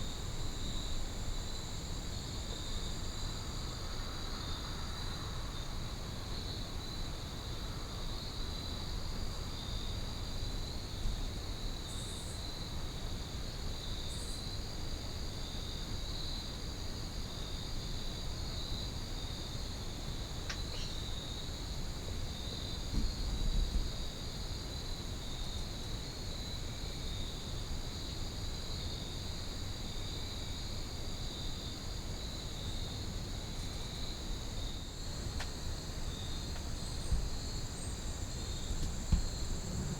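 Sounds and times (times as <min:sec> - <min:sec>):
insects chirping: 0:13.8 - 0:14.5, 0:17.9 - 0:39.9
low thump: 0:38.8 - 0:39.9.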